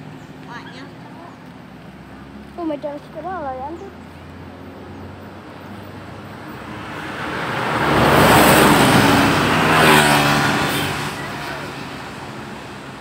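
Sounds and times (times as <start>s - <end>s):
vehicle passing close by: 0.0s - 13.0s.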